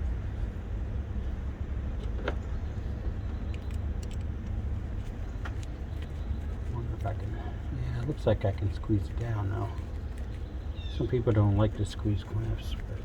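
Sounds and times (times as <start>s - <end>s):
steady low rumble: 0.0s - 13.0s.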